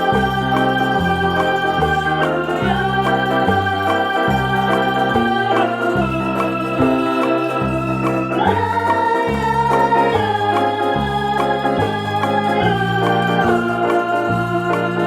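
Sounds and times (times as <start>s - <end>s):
organ-like chords: 0.0s - 15.0s
repeating bass line: 0.0s - 15.0s.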